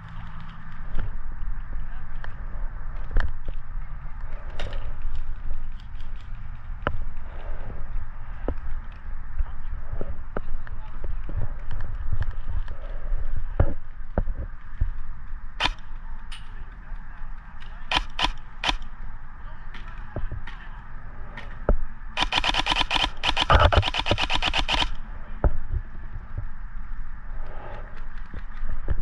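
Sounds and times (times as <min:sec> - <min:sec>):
airsoft guns firing: 0:15.6 - 0:15.9, 0:17.9 - 0:18.9, 0:22.2 - 0:25.0.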